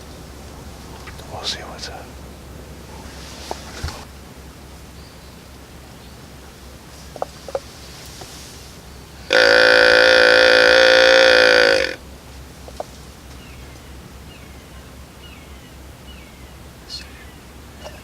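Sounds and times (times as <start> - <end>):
buzzy deer call: 9.2 - 12.0
faint bird chirps: 13.2 - 18.0.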